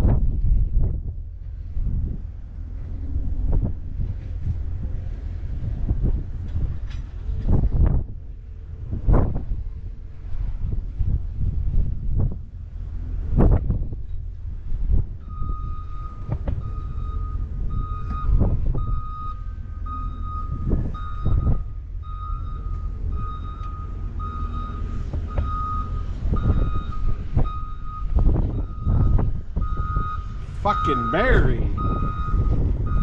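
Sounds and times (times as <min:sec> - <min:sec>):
wind buffeting microphone: 0:00.0 - 0:33.0
vehicle backup alarm beeping: 0:15.2 - 0:33.0.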